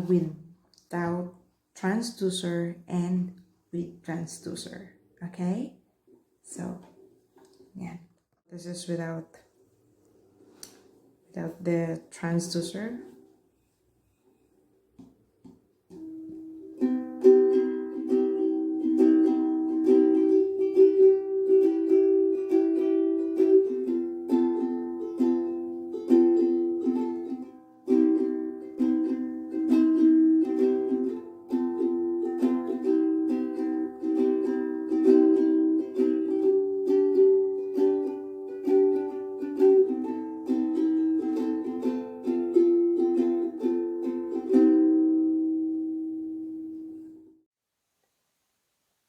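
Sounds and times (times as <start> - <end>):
ukulele plucked notes: 15.9 - 47.4
ukulele strummed chords: 15.9 - 47.4.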